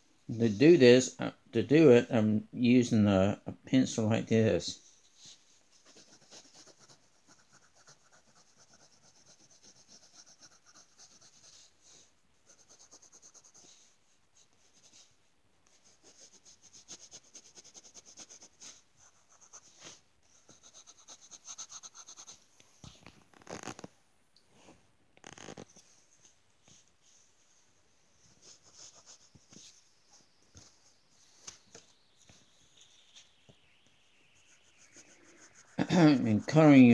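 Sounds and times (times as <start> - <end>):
pencil scratching on paper: 5.8 - 11.7, 12.5 - 13.8, 15.7 - 22.4, 28.4 - 29.8, 34.2 - 36.9.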